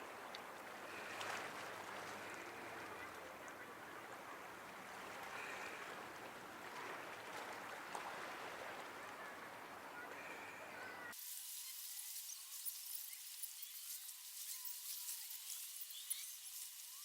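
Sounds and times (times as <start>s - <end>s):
water gently lapping: 0.0s - 11.2s
thin high hiss: 10.2s - 17.0s.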